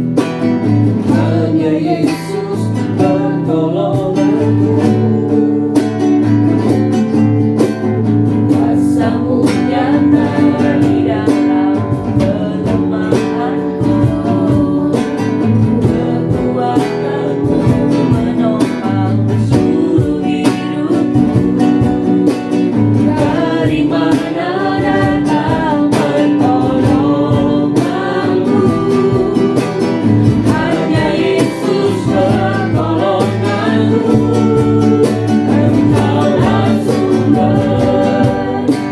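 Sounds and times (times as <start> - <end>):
guitar accompaniment: 0.0 - 38.9
worship singing: 0.8 - 6.9, 7.9 - 38.9.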